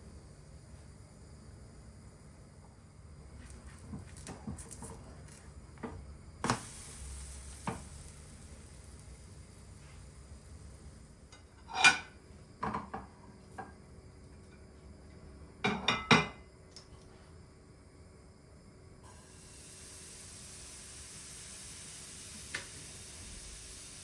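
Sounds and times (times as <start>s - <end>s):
dishes and utensils clinking: 11.5s - 13.0s.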